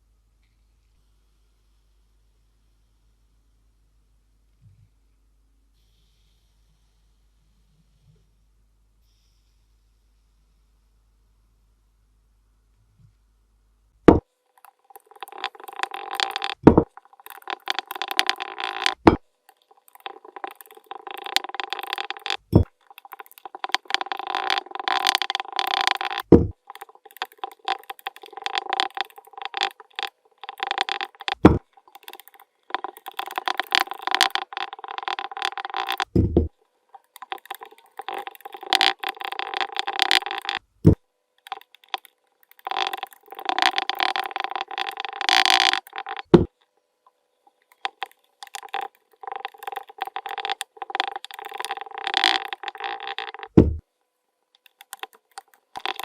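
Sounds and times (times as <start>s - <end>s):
dull low thud: 36.2s - 36.5s.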